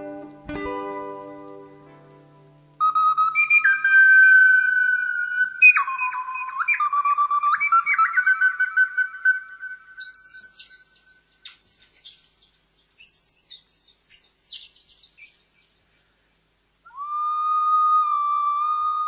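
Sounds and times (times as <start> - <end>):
high rapid bird chirps: 2.9 - 17.0.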